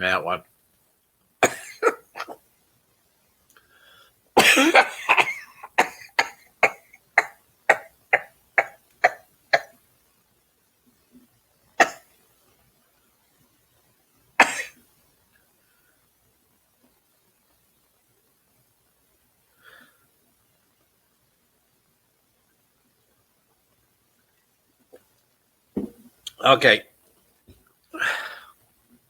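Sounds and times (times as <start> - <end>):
man coughing: 1.4 - 2.4, 4.4 - 9.7, 14.4 - 14.7.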